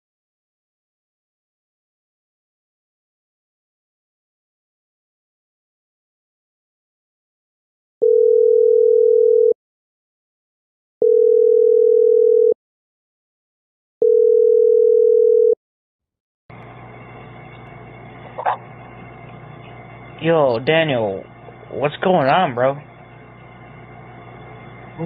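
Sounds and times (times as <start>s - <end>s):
low background hum: 16.5s - 25.0s
steady electronic tones: 16.5s - 25.0s.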